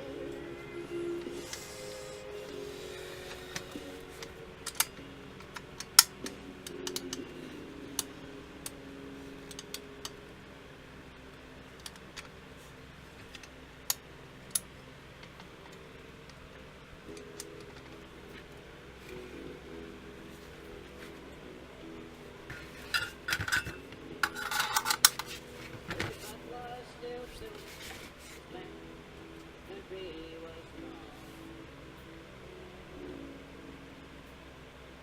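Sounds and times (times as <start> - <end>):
faint background music: 0.0 - 35.0.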